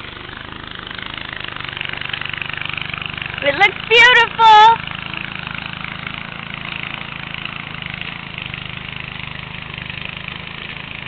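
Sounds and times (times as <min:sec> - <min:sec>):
engine running steadily: 0:00.0 - 0:11.0.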